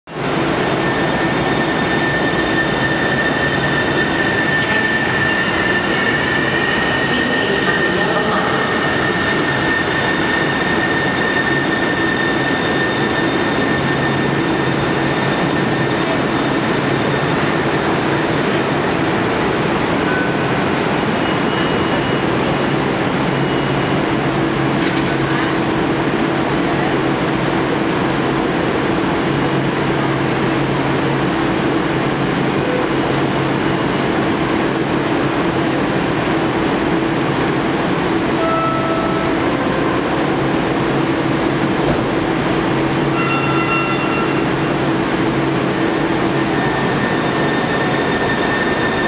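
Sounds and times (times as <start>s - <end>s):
light rail train rumble: 0.1s - 49.0s
high-pitched wheel squeal: 0.3s - 18.1s, 19.8s - 22.6s, 43.1s - 45.1s, 45.7s - 49.0s.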